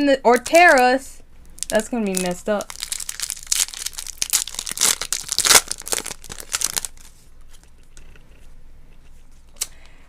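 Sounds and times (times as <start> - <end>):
wrapper crinkling and tearing: 0.3 - 7.9.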